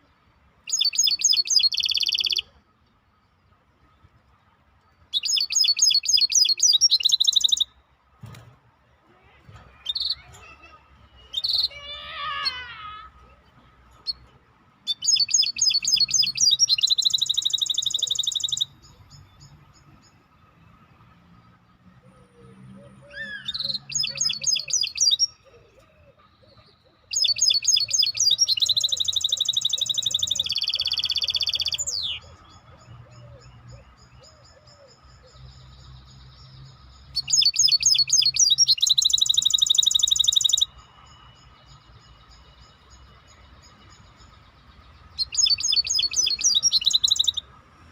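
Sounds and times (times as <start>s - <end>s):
songbird trilling: 0.6s - 2.5s, 5.1s - 7.8s, 9.8s - 12.6s, 14.9s - 19.6s, 23.0s - 47.5s.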